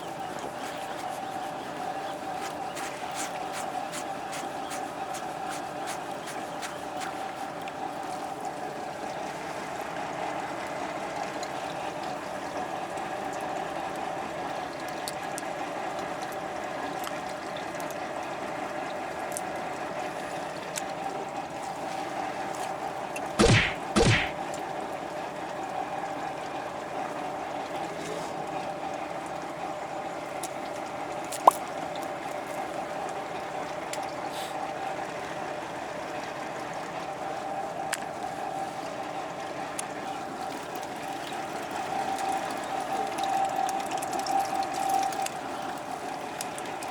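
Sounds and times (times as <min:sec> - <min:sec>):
rushing water: 0:00.0 - 0:08.6
sharp click: 0:23.4 - 0:24.4
short loud sounds: 0:23.4 - 0:24.4.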